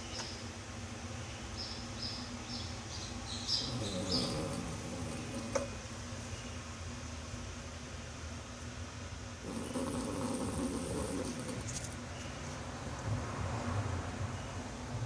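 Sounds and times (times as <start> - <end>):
pet snoring: 3.6 - 5.8, 9.4 - 11.8.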